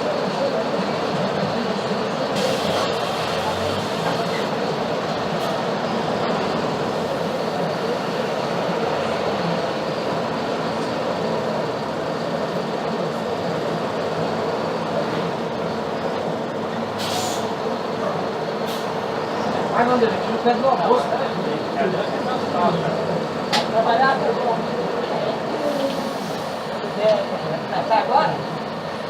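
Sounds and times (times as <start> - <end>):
bus diesel engine running: 0.0 - 29.0
short hiss: 17.0 - 17.5.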